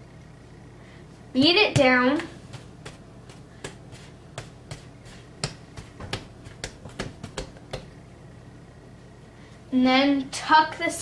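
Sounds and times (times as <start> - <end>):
hands slapping bread dough: 1.4 - 8.0.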